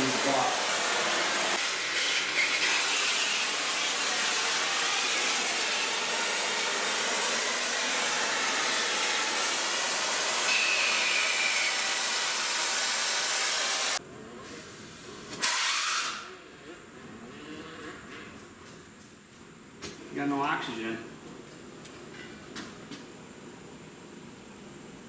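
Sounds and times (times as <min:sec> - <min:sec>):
cutting torch hissing: 0:00.0 - 0:14.0, 0:15.4 - 0:16.2
short burst of gas: 0:14.7 - 0:16.3.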